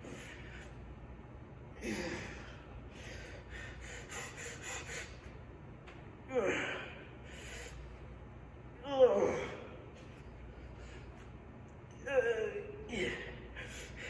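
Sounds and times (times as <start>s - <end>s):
man breathing hard: 1.8s - 5.4s, 6.3s - 8.0s, 12.9s - 14.0s.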